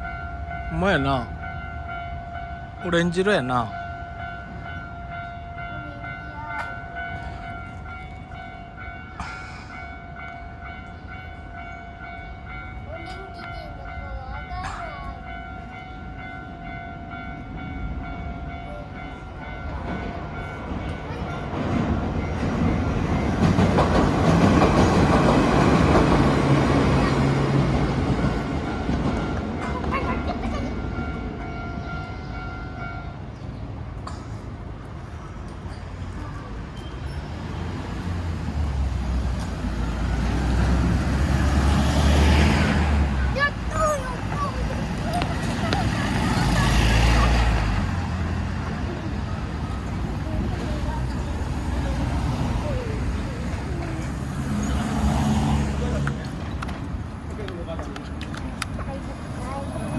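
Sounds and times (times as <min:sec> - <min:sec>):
level crossing warning bell: 0:00.0 - 0:33.8
train rumble: 0:00.0 - 0:59.9.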